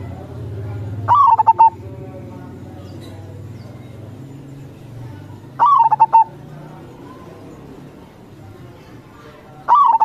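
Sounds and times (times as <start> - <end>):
dove cooing: 1.1 - 1.8, 5.6 - 6.4, 9.6 - 10.0.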